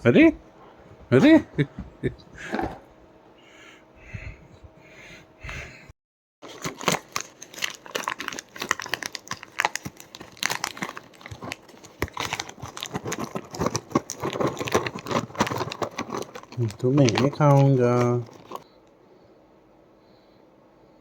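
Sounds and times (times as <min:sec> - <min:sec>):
plastic snack packet crinkling: 0:06.4 - 0:18.6.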